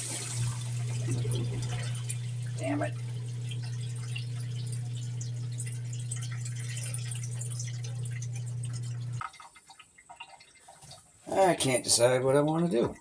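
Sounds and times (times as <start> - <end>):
dishwasher pump motor humming: 0.0 - 9.2
water splashing: 0.0 - 11.5
faint dripping: 0.1 - 11.3.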